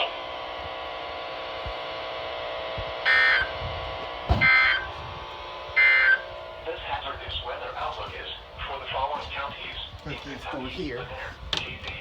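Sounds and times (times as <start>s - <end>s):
steady radio hum: 0.0s - 12.0s
harsh buzzing data bursts: 5.8s - 6.2s.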